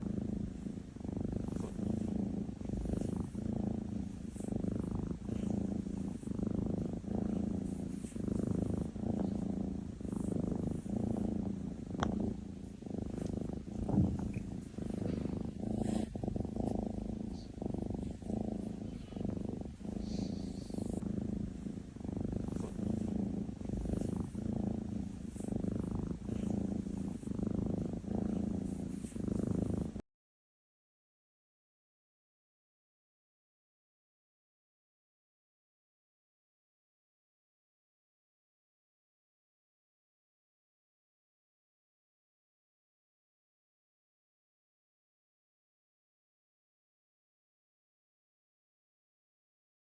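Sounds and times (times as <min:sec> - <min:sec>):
cat purring: 0:00.0 - 0:30.0.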